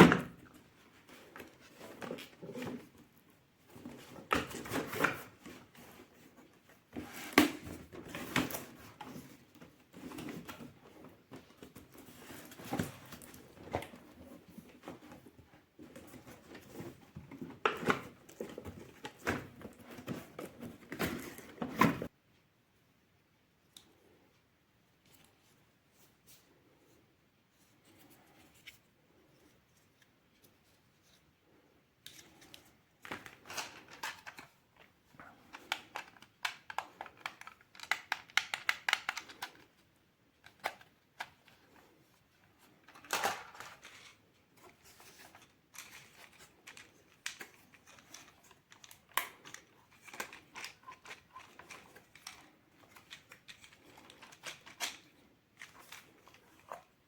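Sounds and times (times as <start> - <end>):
packaging rustling and crinkling: 40.5 - 57.0.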